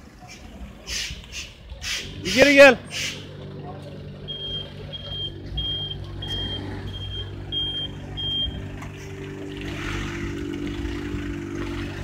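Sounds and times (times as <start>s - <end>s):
engine idling: 0.0s - 12.0s
reversing beeper: 4.2s - 8.7s.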